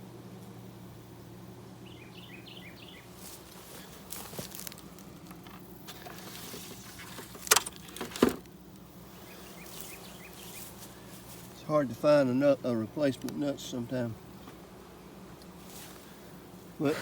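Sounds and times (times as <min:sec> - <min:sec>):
bees buzzing: 0:00.0 - 0:17.0
hive hardware clicks: 0:07.2 - 0:08.9, 0:13.2 - 0:13.4.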